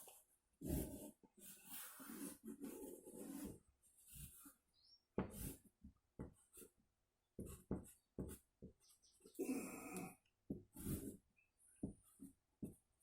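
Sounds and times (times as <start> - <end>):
pen scratching on cardboard: 0.6 - 4.5, 5.2 - 5.7, 10.7 - 11.2.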